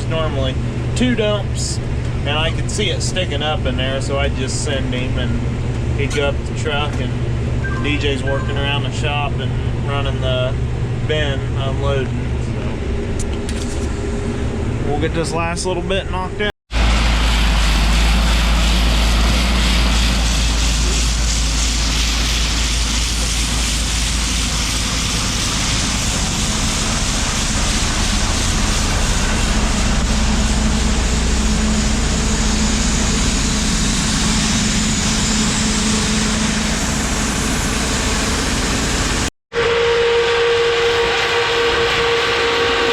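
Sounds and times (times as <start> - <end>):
combine harvester running: 16.7 - 42.9.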